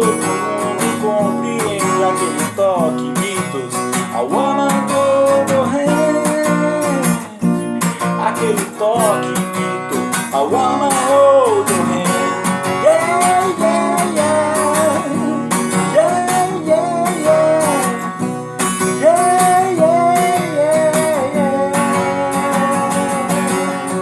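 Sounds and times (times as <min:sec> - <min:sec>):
acoustic guitar strumming: 0:00.0 - 0:24.0
wordless melody line: 0:09.7 - 0:24.0.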